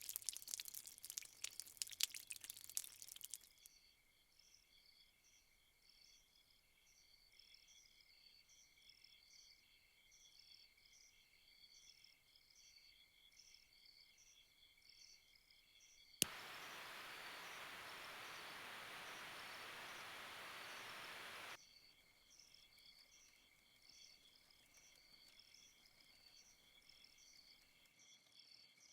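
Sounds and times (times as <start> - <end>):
insects chirping: 16.2 - 21.6
loud even hiss: 16.2 - 21.6.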